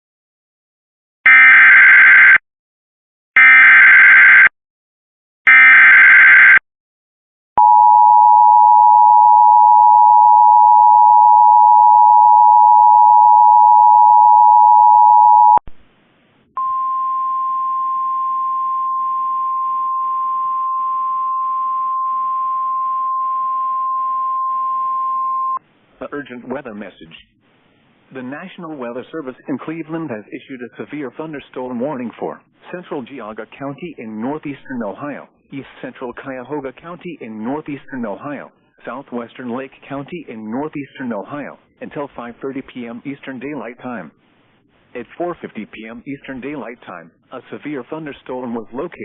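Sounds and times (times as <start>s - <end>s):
steady warning alarm tone: 1.3s - 2.4s, 3.4s - 4.5s, 5.5s - 6.6s.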